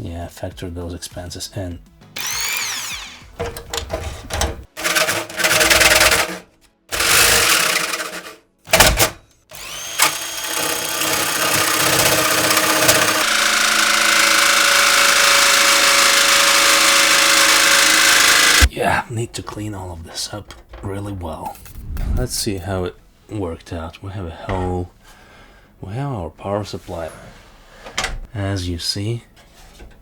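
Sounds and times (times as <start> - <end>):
electric jigsaw cutting sheet metal: 2.2 - 18.7.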